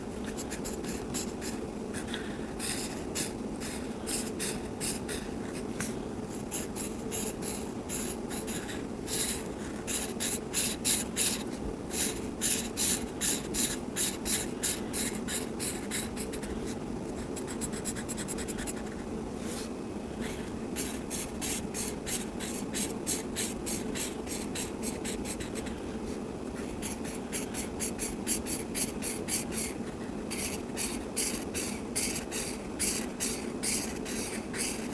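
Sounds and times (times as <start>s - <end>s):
steady low hum: 0.0s - 34.9s
crayon scratching on paper: 17.3s - 19.1s, 20.8s - 25.8s, 26.6s - 34.9s.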